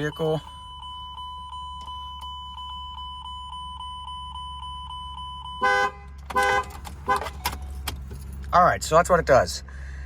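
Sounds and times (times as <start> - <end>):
car alarm chime beeping: 0.0 - 7.8
car horn: 5.4 - 7.7.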